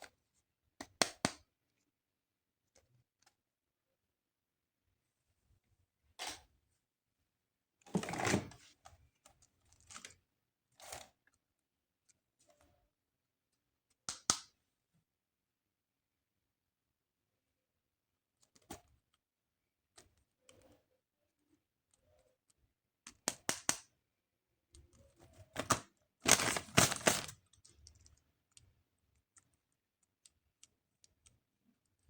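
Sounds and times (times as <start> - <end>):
plastic packaging rustling: 25.6 - 27.4.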